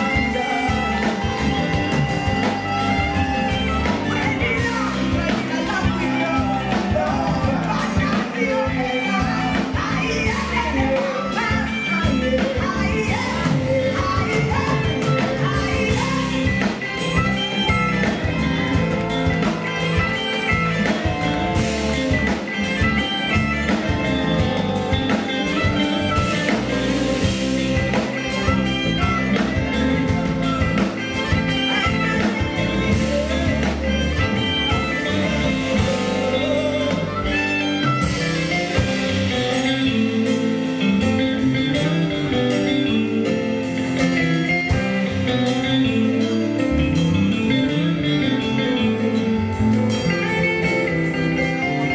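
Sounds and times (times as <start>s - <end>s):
woman singing: 0.0s - 46.4s
live band playing: 0.0s - 51.9s.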